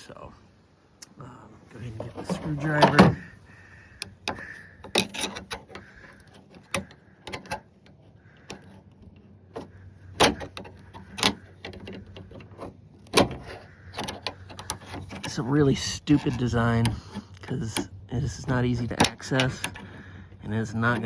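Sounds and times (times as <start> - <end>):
screwdriver clicking on latch: 4.0 - 8.7, 9.6 - 15.4, 19.0 - 19.9.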